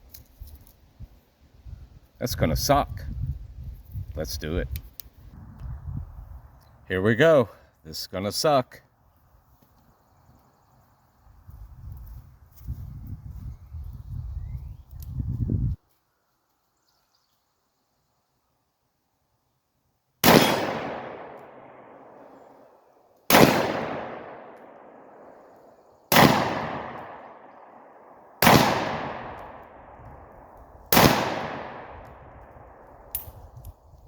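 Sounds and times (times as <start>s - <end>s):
revolver shots echoing: 20.2s - 22.2s, 23.3s - 24.9s, 26.1s - 27.5s, 28.4s - 29.7s, 30.9s - 32.0s.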